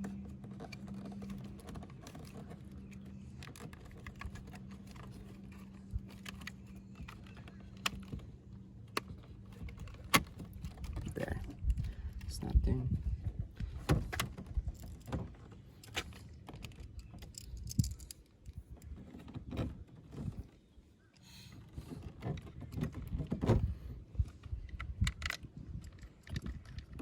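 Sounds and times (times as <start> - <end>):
hands handling plastic parts: 0.0 - 12.3.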